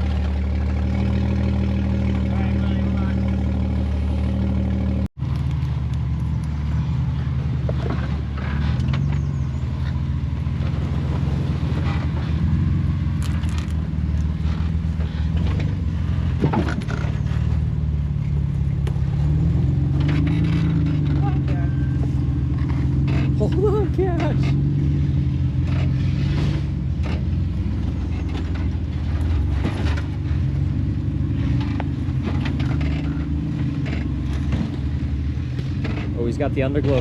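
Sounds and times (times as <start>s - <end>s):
off-road vehicle engine: 0.0s - 37.0s
knocks and scrapes on rocks: 13.2s - 17.7s.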